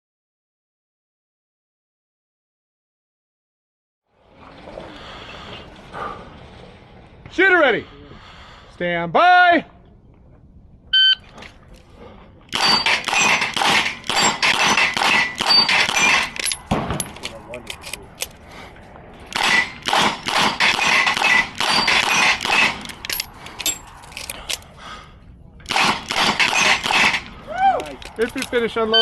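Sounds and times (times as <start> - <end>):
shot timer beep: 11.0 - 11.2
revolver rapid fire: 12.6 - 17.1, 19.3 - 23.0, 25.7 - 27.4.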